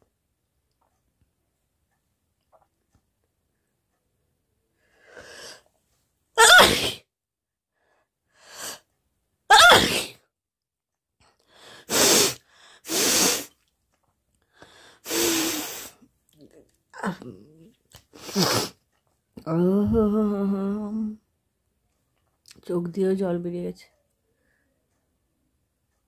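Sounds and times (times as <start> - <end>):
woman sneezing loudly: 6.4 - 7.1, 9.5 - 10.2.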